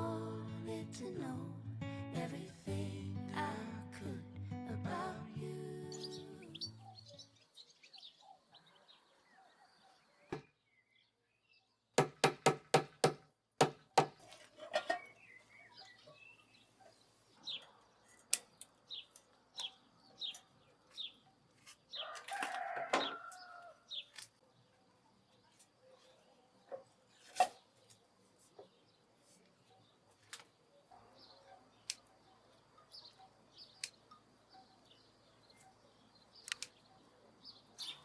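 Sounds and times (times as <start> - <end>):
birds chirping: 5.2 - 11.7, 30.9 - 38.0
sharp clicks: 36.4 - 36.8.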